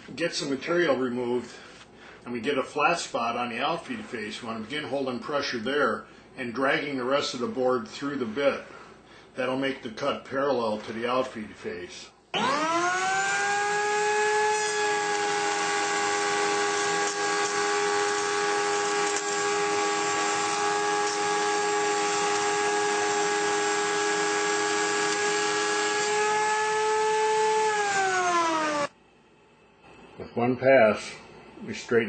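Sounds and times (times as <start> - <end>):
electric router whine: 12.3 - 29.0.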